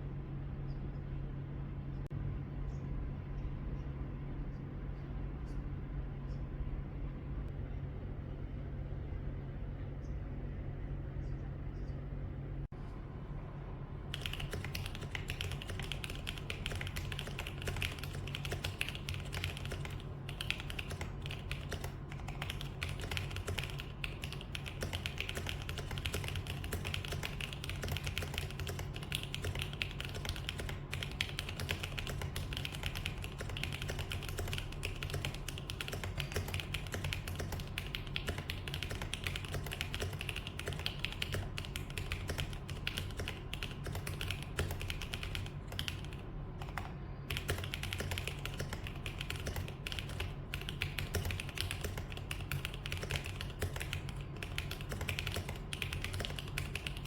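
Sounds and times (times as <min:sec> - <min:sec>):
mechanical keyboard typing: 0:14.1 - 0:57.0.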